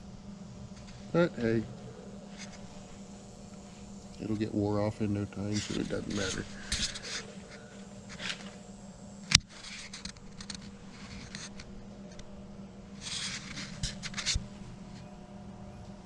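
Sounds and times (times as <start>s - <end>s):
steady low hum: 0.0s - 16.0s
tools scraping and rustling: 5.4s - 8.7s, 9.4s - 12.2s, 13.0s - 15.1s.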